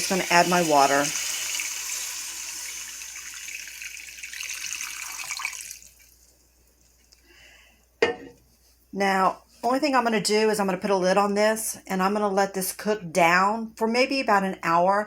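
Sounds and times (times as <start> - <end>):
water pouring into a skillet: 0.0 - 6.2.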